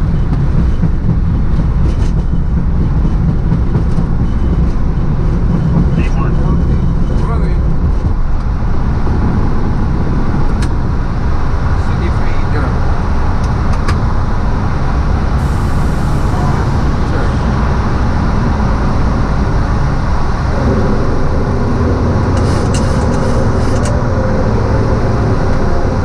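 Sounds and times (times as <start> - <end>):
cockpit low rumble: 0.0 - 26.0
faint humming tones: 15.4 - 26.0.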